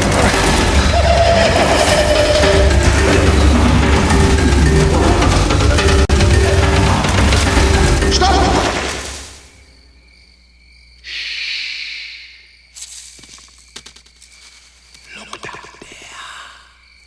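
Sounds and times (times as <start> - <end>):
background music: 0.0 - 9.7
night insects chirring: 0.0 - 17.0.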